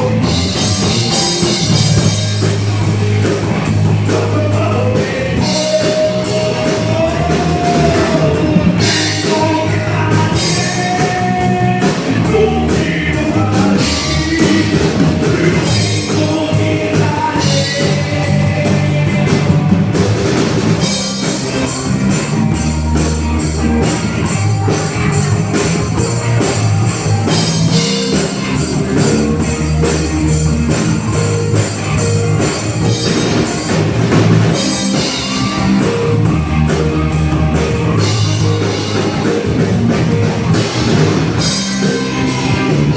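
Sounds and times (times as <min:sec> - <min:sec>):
person singing: 0:00.0 - 0:20.0
live rock band playing: 0:00.0 - 0:42.9.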